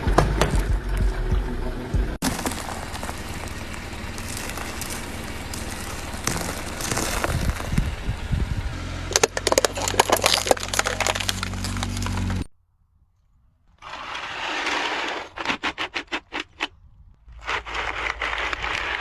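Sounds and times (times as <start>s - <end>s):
steady low hum: 0.0s - 12.5s
objects cracking and splintering: 2.2s - 8.4s, 9.1s - 12.5s, 13.7s - 19.0s.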